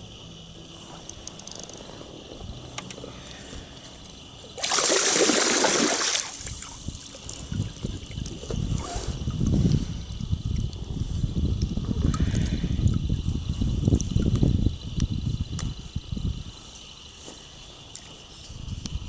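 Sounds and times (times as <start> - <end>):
water sloshing and trickling: 3.0 - 9.6.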